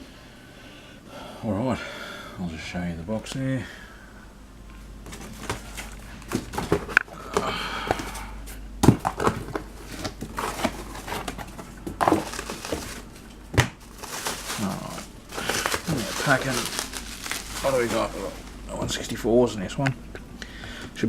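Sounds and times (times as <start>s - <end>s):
cardboard box being handled: 5.0s - 8.2s, 8.8s - 13.0s, 13.8s - 19.0s.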